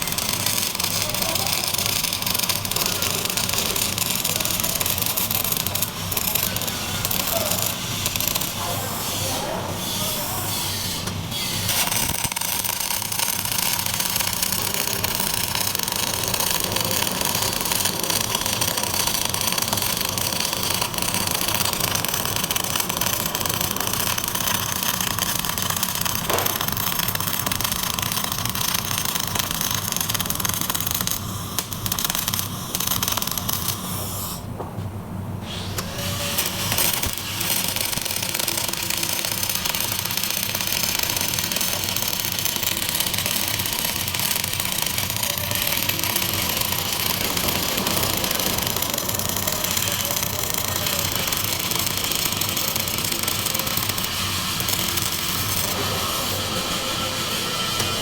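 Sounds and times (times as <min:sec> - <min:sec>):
welding arc hissing: 0:00.0 - 0:34.5, 0:35.4 - 0:58.0.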